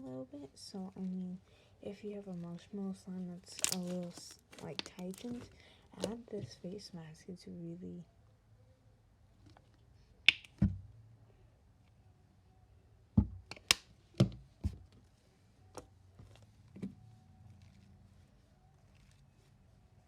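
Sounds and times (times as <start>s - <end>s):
slime clicks and pops: 10.3s - 10.6s.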